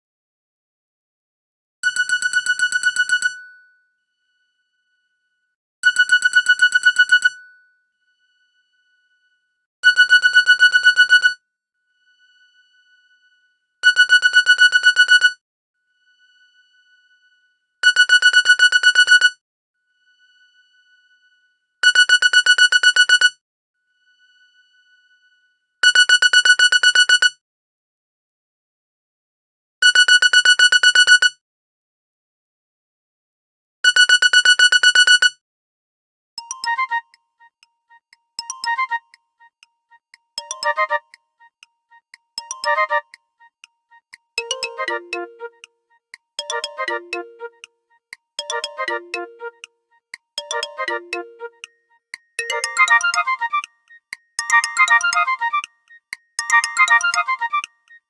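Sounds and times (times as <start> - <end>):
ringtone beep trill: 17.8 - 19.3, 21.8 - 23.3, 33.9 - 35.3, 38.4 - 39.6, 40.4 - 47.7, 48.4 - 57.7.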